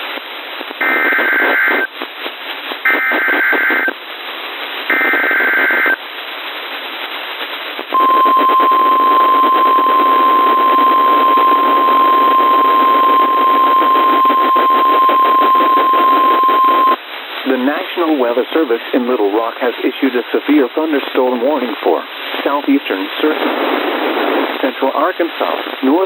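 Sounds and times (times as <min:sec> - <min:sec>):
radio hiss: 0:00.0 - 0:06.0, 0:06.7 - 0:26.0
high warning alarm tone: 0:08.0 - 0:17.0
warbling data tones: 0:08.0 - 0:17.0.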